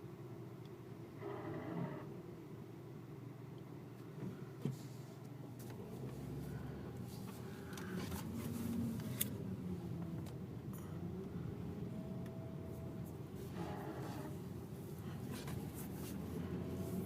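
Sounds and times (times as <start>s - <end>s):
engine ticks and clicks: 0.6s - 0.8s, 6.9s - 11.4s, 12.1s - 12.4s
car engine humming: 2.0s - 17.0s.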